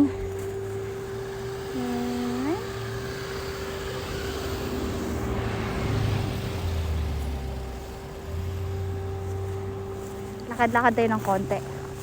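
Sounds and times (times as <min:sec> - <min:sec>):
steady hum: 0:00.0 - 0:12.0
car driving past: 0:02.4 - 0:10.5.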